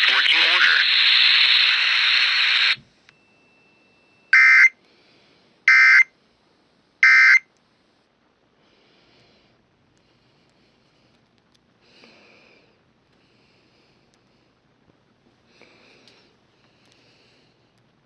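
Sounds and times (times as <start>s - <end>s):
static hiss: 0.0s - 2.8s.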